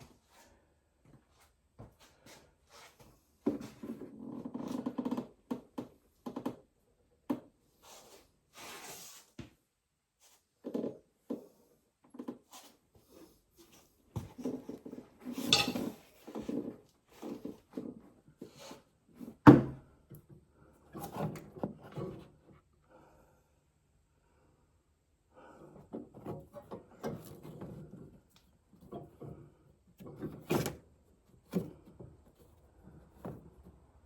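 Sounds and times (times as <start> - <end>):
metal parts knocking and clinking: 15.4 - 16.0.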